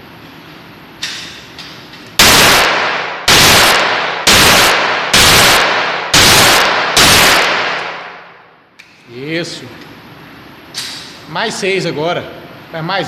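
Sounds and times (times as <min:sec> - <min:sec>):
revolver shots echoing: 0:02.2 - 0:08.4.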